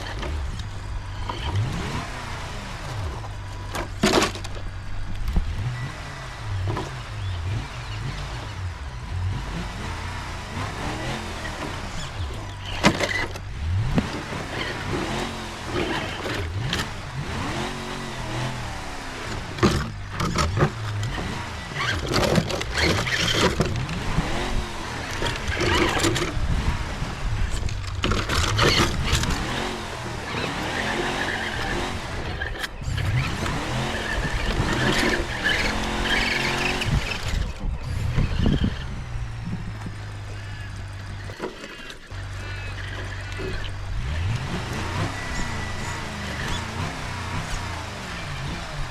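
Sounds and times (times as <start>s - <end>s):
truck engine revving: 0.0s - 48.9s.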